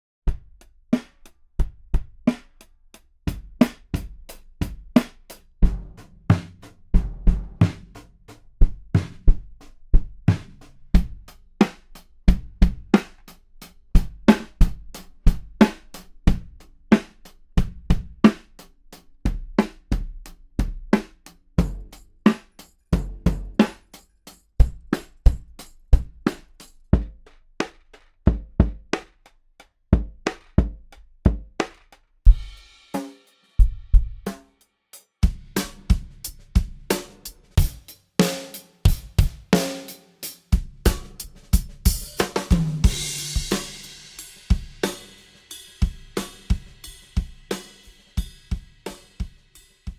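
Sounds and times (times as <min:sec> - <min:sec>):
drums playing: 0:03.3 - 0:09.4, 0:21.0 - 0:24.0, 0:24.6 - 0:29.1, 0:30.0 - 0:34.5, 0:35.2 - 0:49.9.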